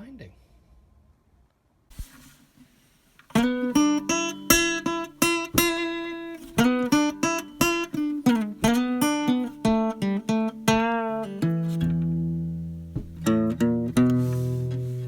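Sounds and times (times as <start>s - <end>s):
acoustic guitar chords: 3.3s - 15.0s.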